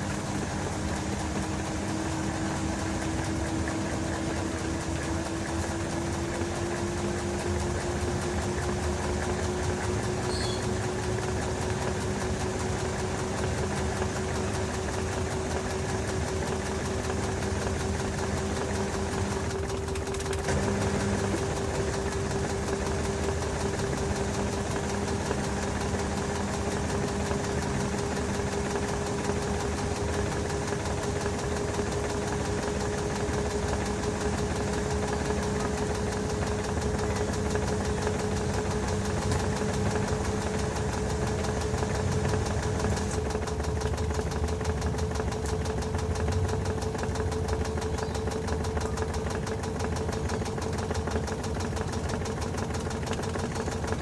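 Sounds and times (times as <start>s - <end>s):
washing machine spinning: 0.0s - 54.0s.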